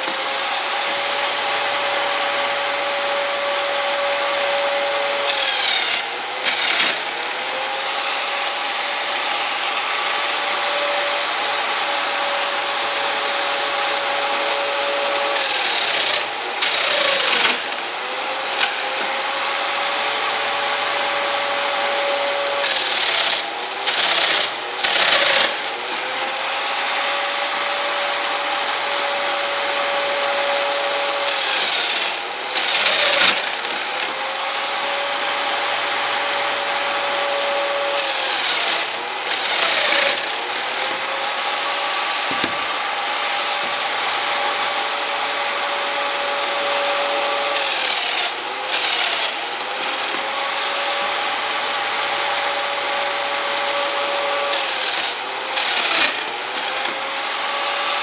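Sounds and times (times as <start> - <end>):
power saw whining and cutting wood: 0.0 - 58.0.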